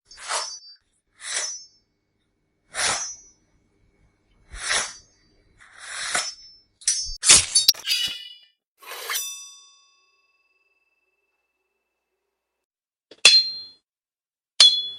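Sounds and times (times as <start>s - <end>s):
metal blade scraping draws: 0.1s - 1.8s, 2.7s - 3.4s, 4.5s - 9.4s.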